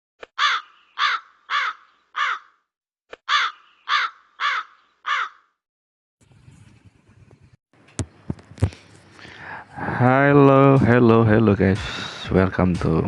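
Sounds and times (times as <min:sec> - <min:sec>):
crow cawing: 0:00.4 - 0:02.6, 0:03.3 - 0:05.6.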